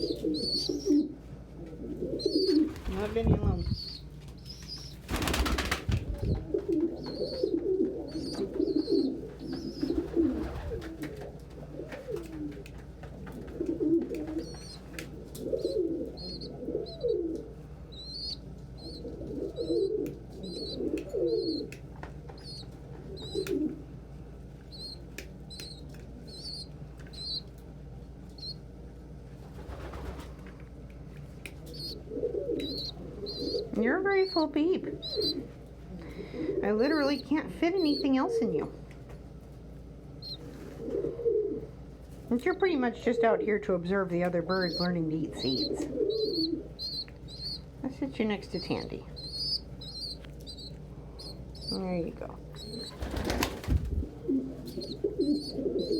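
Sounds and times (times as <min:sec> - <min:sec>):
pigeons cooing: 0:00.0 - 0:27.5, 0:31.5 - 0:38.7, 0:40.2 - 0:55.9
wings flapping: 0:02.2 - 0:23.8, 0:24.7 - 0:27.5, 0:29.4 - 0:30.6, 0:31.4 - 0:35.6, 0:44.2 - 0:51.8, 0:52.4 - 0:55.9.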